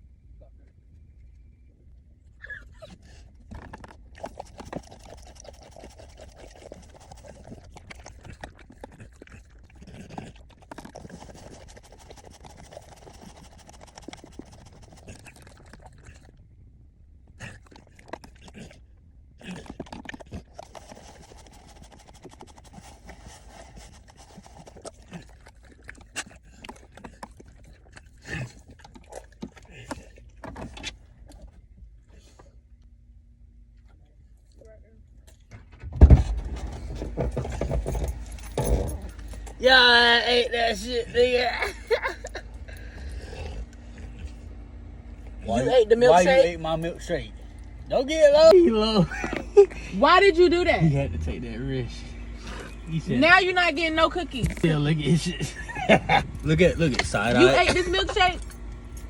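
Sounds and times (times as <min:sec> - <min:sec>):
dog panting: 0:03.0 - 0:16.3, 0:19.5 - 0:30.8, 0:40.6 - 0:44.5, 0:54.4 - 0:59.0
dog licking and lapping: 0:03.0 - 0:16.4, 0:17.3 - 0:32.4, 0:36.2 - 0:44.5, 0:54.4 - 0:59.0.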